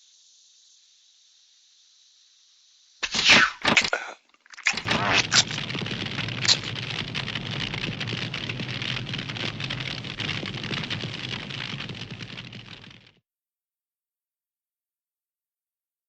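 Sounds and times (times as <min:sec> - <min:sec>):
fire crackling and hissing: 0:00.2 - 0:13.1
sharp snaps of fire: 0:03.0 - 0:11.0.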